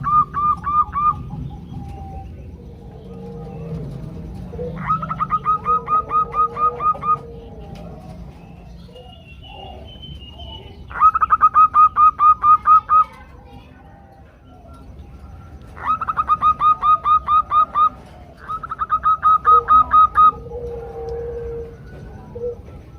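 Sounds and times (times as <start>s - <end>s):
dove calling series: 0.0s - 22.9s.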